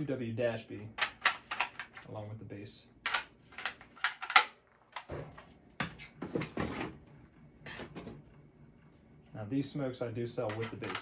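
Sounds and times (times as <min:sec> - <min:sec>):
plastic clattering: 0:01.0 - 0:02.1, 0:03.1 - 0:05.3, 0:10.5 - 0:11.0.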